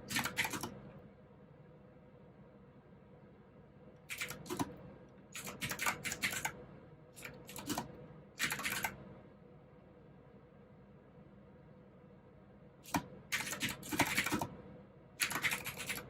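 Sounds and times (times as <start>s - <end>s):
clicky mechanical keyboard typing: 0.0s - 0.8s, 4.1s - 4.8s, 5.4s - 6.6s, 7.2s - 9.0s, 12.9s - 14.6s, 15.2s - 16.0s.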